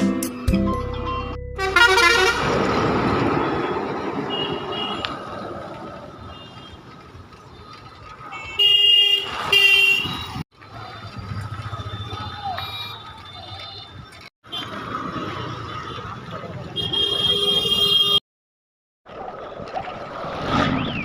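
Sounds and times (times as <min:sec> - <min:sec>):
road traffic: 0:00.0 - 0:18.2
vehicle horns honking: 0:01.6 - 0:02.6, 0:03.6 - 0:05.2, 0:06.2 - 0:06.8, 0:08.3 - 0:10.4, 0:11.7 - 0:14.7, 0:16.8 - 0:18.2.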